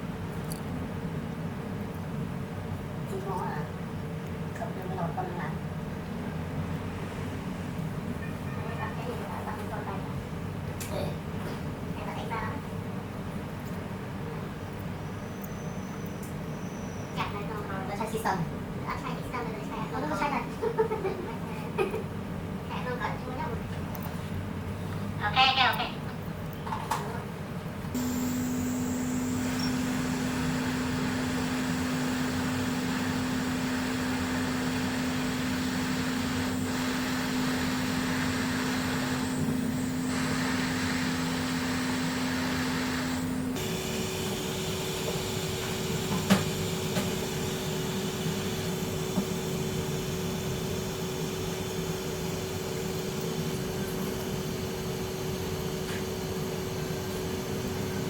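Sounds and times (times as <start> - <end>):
electric fan whirring: 17.1 - 58.0.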